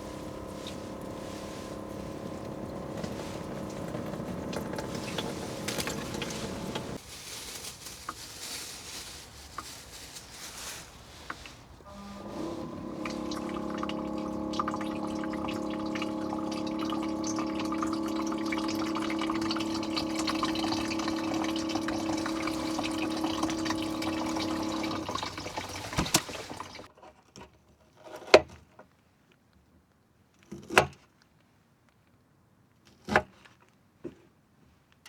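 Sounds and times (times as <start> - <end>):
steady hum: 0.0 - 7.0, 11.9 - 26.9
water running into container: 0.0 - 7.0, 11.1 - 26.9.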